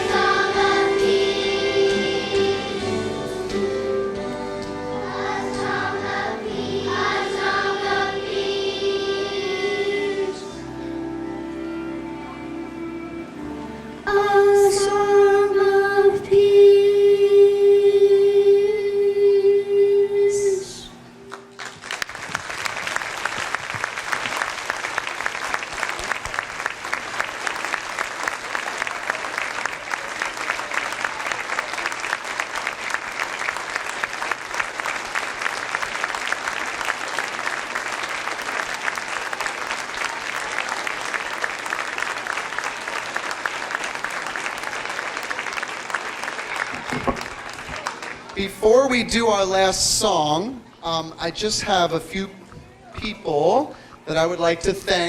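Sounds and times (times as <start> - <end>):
audience applauding: 21.3 - 48.4.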